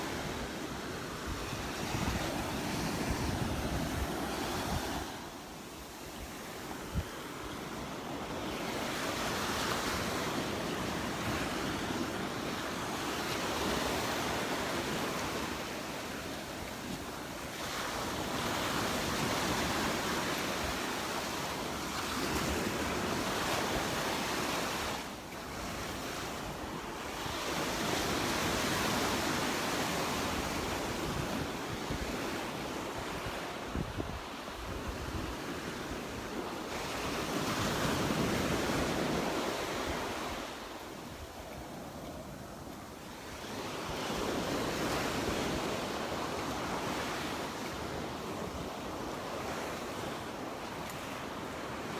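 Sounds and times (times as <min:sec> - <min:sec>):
surf washing onto beach: 0:00.0 - 0:51.9
wind buffeting microphone: 0:01.2 - 0:05.2, 0:29.9 - 0:42.6.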